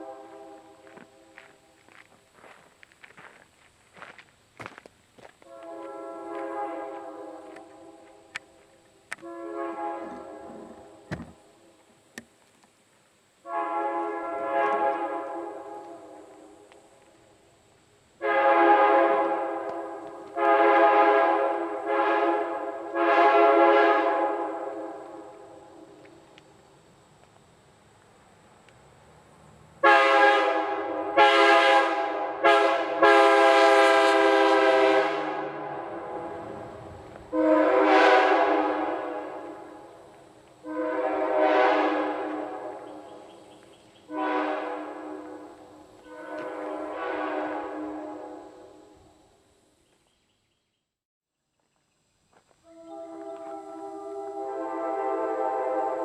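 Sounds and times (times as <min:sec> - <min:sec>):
locomotive air horn: 0:00.0 - 0:01.4, 0:05.4 - 0:08.4, 0:09.1 - 0:11.4, 0:13.4 - 0:16.6, 0:18.2 - 0:25.9, 0:29.8 - 0:40.0, 0:40.6 - 0:43.4, 0:44.0 - 0:49.1, 0:52.6 - 0:56.0.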